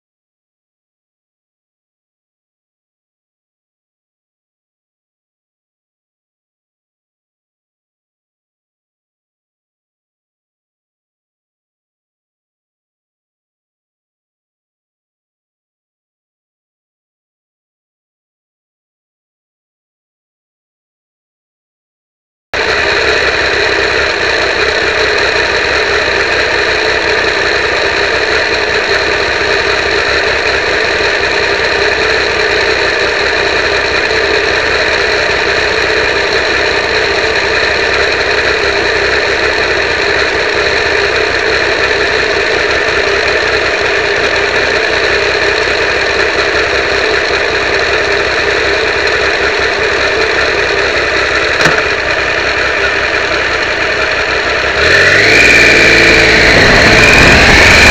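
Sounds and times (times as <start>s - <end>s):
motorcycle engine drone: 22.6s - 57.9s.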